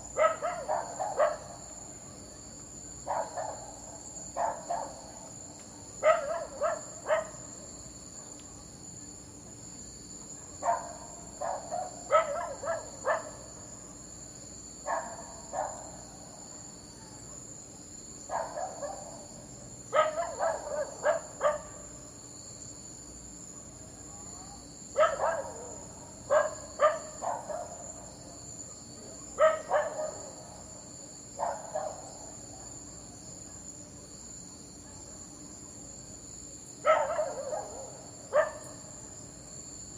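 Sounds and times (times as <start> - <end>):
dog barking: 0.2 - 1.6, 3.0 - 5.1, 6.0 - 7.5, 10.4 - 13.5, 14.8 - 17.5, 18.3 - 19.3, 19.9 - 21.9, 25.0 - 28.0, 28.6 - 30.6, 31.4 - 32.3, 34.8 - 35.2, 36.8 - 38.8.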